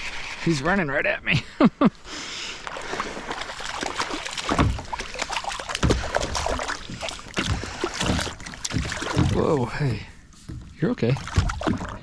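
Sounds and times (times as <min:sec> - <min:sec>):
water splashing: 0:02.5 - 0:10.0, 0:10.8 - 0:12.0
thumps against kayak hull: 0:04.4 - 0:05.0, 0:05.7 - 0:09.4.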